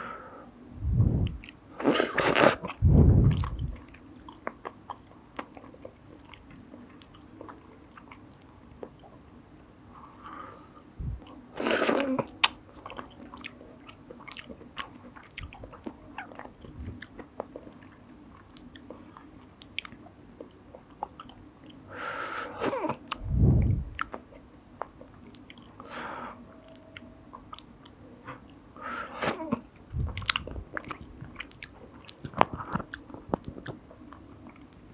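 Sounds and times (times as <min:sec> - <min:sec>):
noodle slurps: 0:01.8 - 0:03.8, 0:11.6 - 0:12.2
wet chewing clicks: 0:30.1 - 0:34.8.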